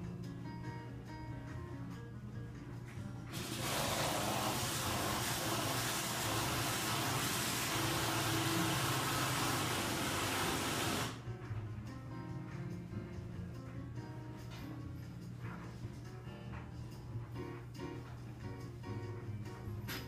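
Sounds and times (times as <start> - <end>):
loud steady rushing hiss: 3.3 - 11.2.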